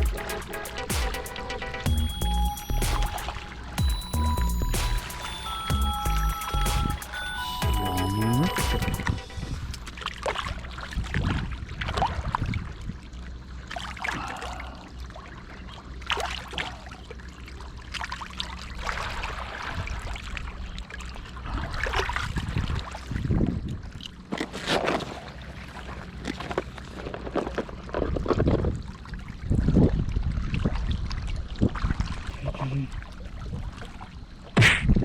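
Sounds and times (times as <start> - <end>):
water sloshing and splashing: 15.2 - 34.8.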